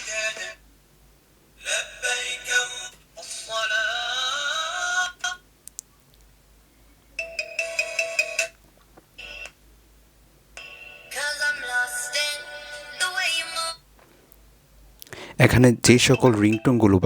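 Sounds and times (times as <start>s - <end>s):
mobile phone ringtones: 7.2s - 8.6s.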